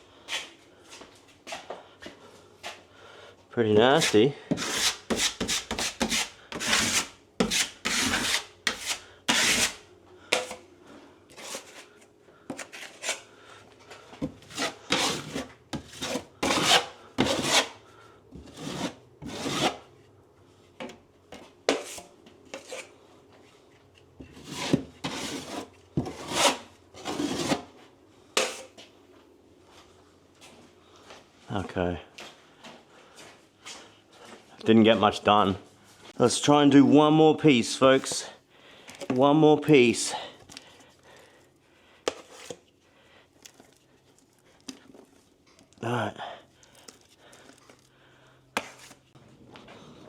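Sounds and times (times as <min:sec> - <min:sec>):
hand tool scraping plaster: 0:03.9 - 0:10.6, 0:11.3 - 0:13.2, 0:14.3 - 0:17.8, 0:18.4 - 0:19.8, 0:24.3 - 0:27.7, 0:42.1 - 0:42.6.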